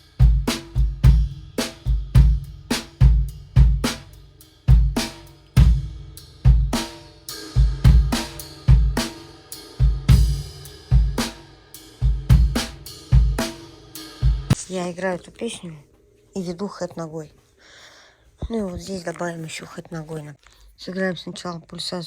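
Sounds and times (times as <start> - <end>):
drum kit groove: 0.0 - 15.4
cymbal wash ringing: 4.2 - 14.6.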